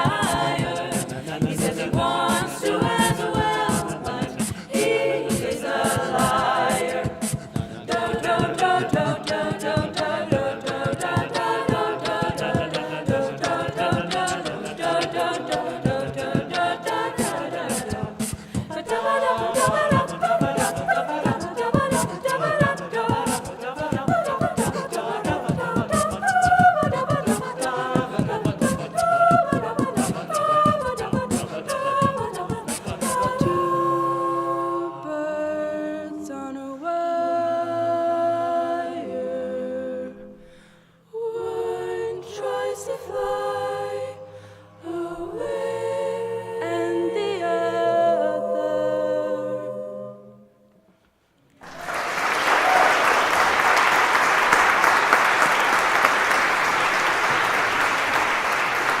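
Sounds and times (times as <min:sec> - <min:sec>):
a cappella group singing: 0:00.0 - 0:50.7
applause: 0:51.6 - 0:59.0.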